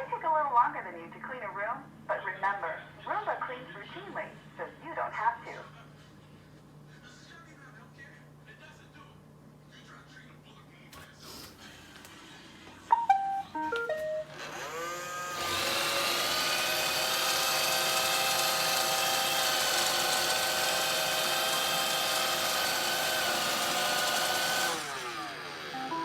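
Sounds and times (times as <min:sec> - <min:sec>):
robot vacuum beeping tune: 0:12.9 - 0:14.9, 0:25.6 - 0:26.0
vacuum motors whining: 0:14.3 - 0:26.0.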